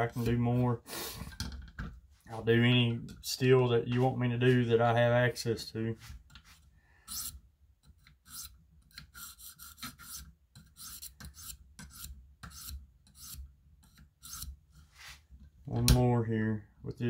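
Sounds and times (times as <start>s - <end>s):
sharpening stone rasping on blade: 7.1s - 7.4s, 8.2s - 14.5s.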